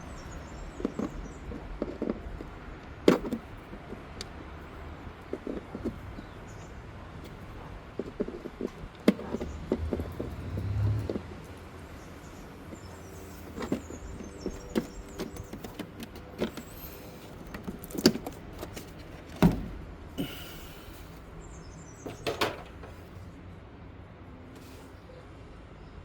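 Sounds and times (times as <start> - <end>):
plastic covers clicking and knocking: 13.4 - 19.9, 22.1 - 23.0.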